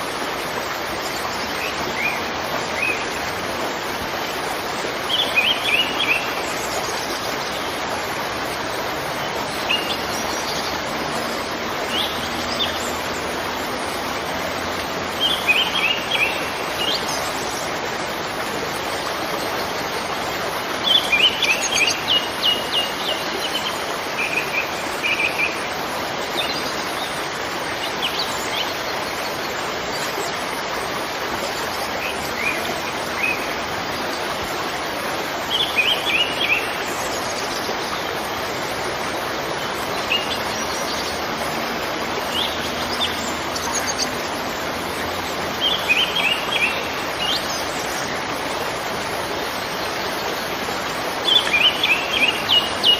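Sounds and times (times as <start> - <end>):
waterfall rushing: 0.0 - 52.9
small birds chirping: 39.3 - 48.4.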